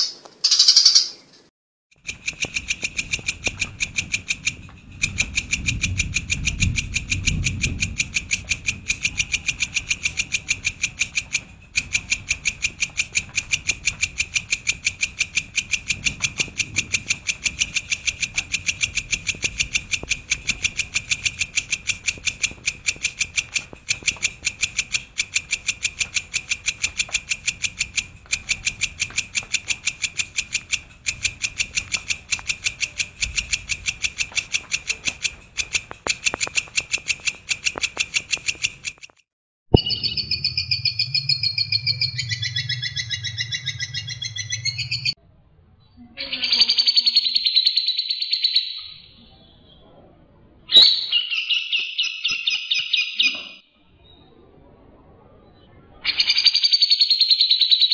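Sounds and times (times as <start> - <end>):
songbird rapid high notes: 0.0 - 1.2, 39.8 - 45.2
low rumble: 3.6 - 10.8, 39.8 - 45.5.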